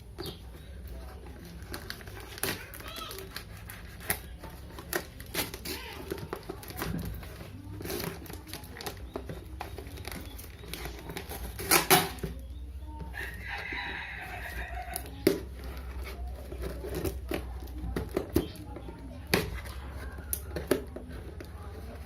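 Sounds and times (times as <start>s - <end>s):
rooster crowing: 13.1s - 15.1s.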